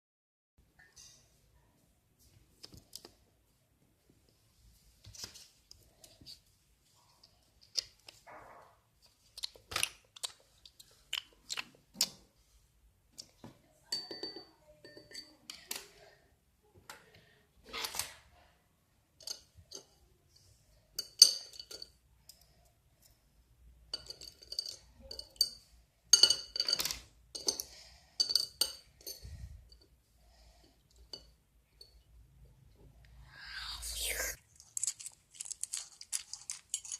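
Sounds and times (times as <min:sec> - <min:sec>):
small hard objects tapping: 0:34.4 - 0:36.9.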